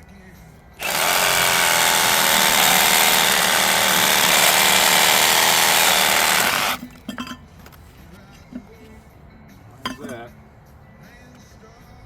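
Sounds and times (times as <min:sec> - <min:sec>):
reciprocating saw cutting iron pipe: 0:00.8 - 0:06.9.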